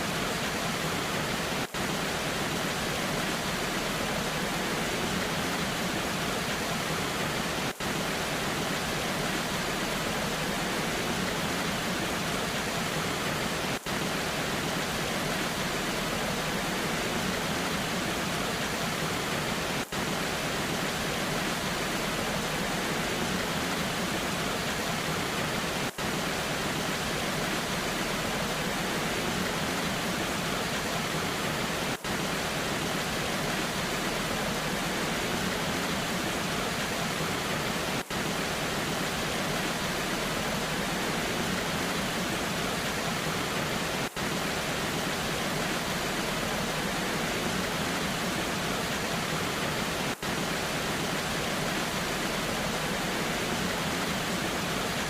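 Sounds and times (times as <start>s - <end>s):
rush of falling water: 0.0s - 55.0s.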